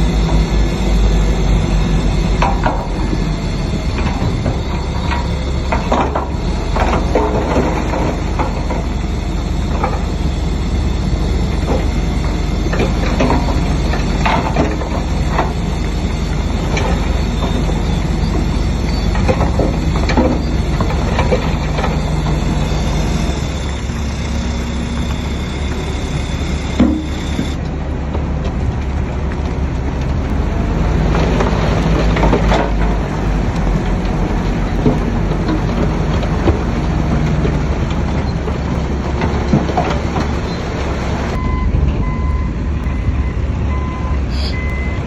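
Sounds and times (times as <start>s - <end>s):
diesel bulldozer engine running: 0.0s - 45.0s
metallic clanks from tracks: 0.0s - 45.0s.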